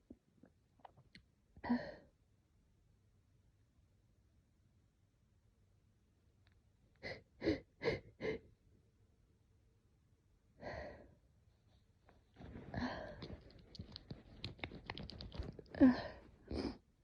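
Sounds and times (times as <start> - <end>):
rustling: 11.6 - 16.4.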